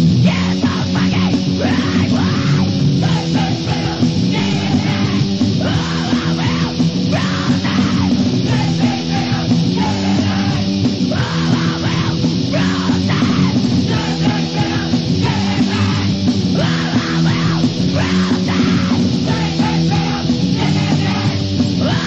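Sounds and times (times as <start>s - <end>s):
fast loud punk song: 0.0s - 22.0s
shouted vocals: 0.2s - 22.0s.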